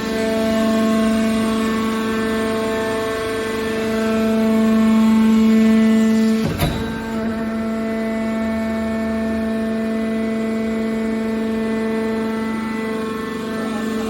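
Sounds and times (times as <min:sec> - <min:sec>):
hydraulic power unit whine: 0:00.0 - 0:14.0
short knock: 0:06.4 - 0:07.9.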